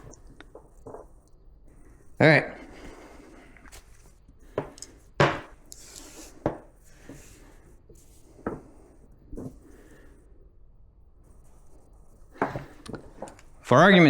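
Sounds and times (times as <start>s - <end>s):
faint rope rustling: 0.0s - 10.3s.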